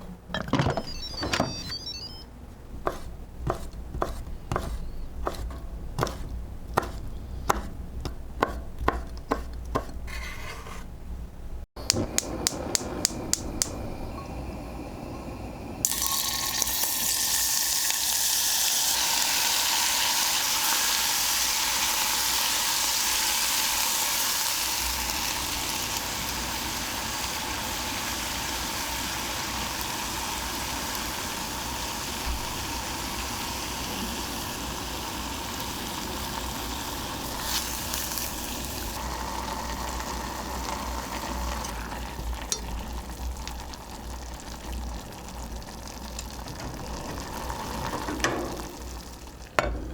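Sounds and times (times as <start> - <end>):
knife chopping on cutting board: 2.9 - 10.0
food sizzling in hot oil: 15.8 - 49.5.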